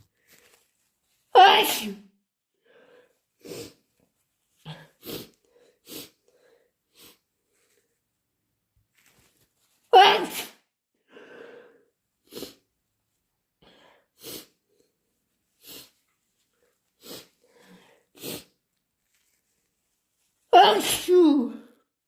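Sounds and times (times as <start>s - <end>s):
loud wet sneeze: 1.3s - 2.1s, 9.9s - 10.7s, 18.2s - 18.6s, 20.5s - 21.4s
soft breathy sound: 2.6s - 8.1s, 11.0s - 12.8s, 13.6s - 18.6s
short sharp sniffs: 14.2s - 14.6s, 16.9s - 18.6s.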